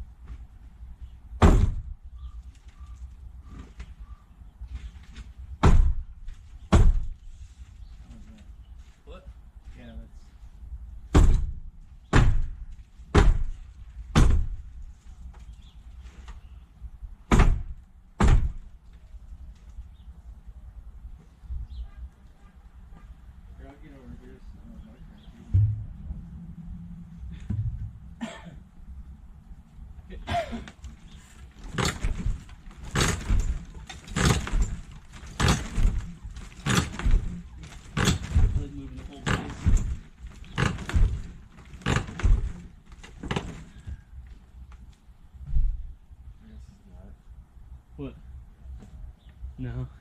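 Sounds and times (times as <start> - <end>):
hammer blows on wooden wall: 1.4 - 1.9, 5.6 - 6.1, 6.7 - 7.2, 11.1 - 14.6, 17.3 - 18.7
sledgehammer striking wood: 1.4 - 1.9, 5.6 - 6.1, 6.7 - 7.2, 11.1 - 14.6, 17.3 - 18.7, 31.5 - 43.7.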